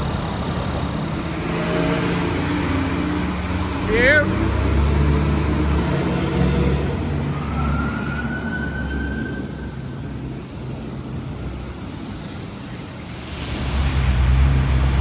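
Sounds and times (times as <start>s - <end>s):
emergency siren wailing: 0.0s - 12.9s
vehicle engine and road rumble: 0.0s - 15.0s
rush of noise: 12.2s - 15.0s.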